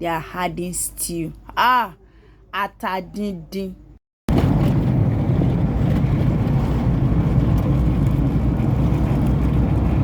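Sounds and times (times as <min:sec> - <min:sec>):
road and wind noise: 0:04.3 - 0:10.0.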